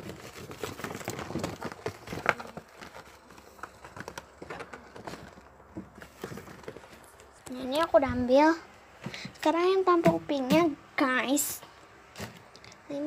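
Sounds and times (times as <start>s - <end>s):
paper bag rustling: 0.0s - 7.4s.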